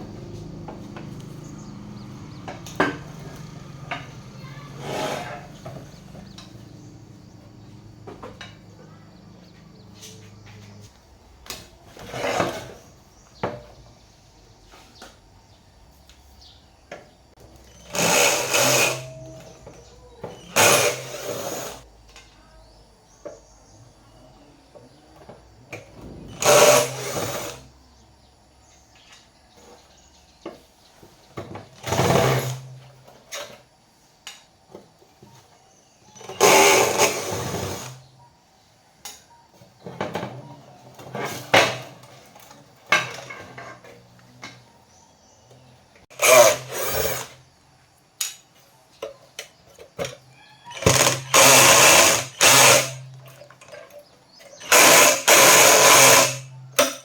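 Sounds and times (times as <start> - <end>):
handheld power tool whirring: 17.6 - 19.7, 20.5 - 21.8, 26.3 - 27.7, 31.8 - 32.7, 36.2 - 38.1, 46.1 - 47.4, 50.7 - 53.7, 54.5 - 57.0.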